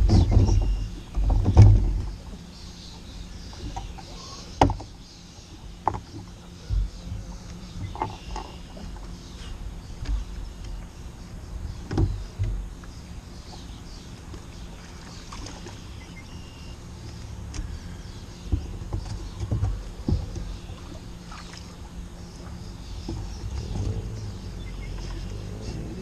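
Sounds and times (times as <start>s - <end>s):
low water rumble: 0.0s - 26.0s
knocks against kayak hull: 18.5s - 20.5s.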